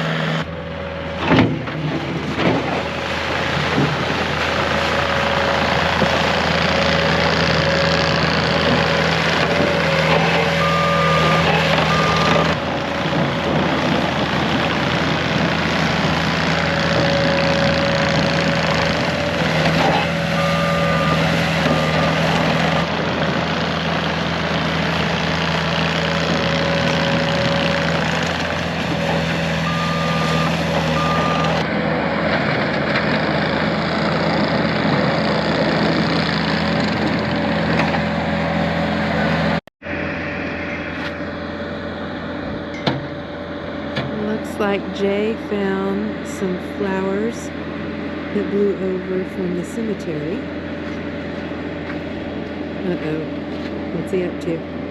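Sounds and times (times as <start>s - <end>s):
loader engine running: 0.0s - 54.9s
reversing alarm beeps: 10.1s - 12.6s, 19.8s - 22.8s, 29.6s - 31.7s.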